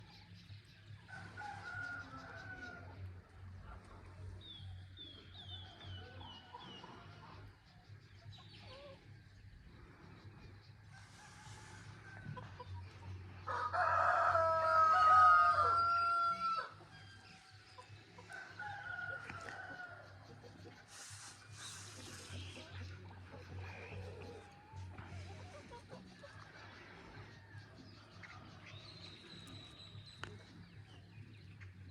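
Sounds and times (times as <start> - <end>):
distant roosters crowing: 1.1 - 3.3, 10.8 - 22.4
rooster crowing: 13.5 - 16.8.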